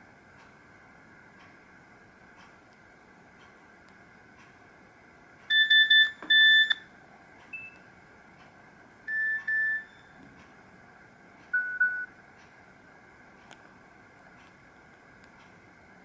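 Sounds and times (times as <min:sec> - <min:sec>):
mobile phone alert beeps: 0:05.5 - 0:06.8, 0:09.1 - 0:10.0, 0:11.6 - 0:12.1.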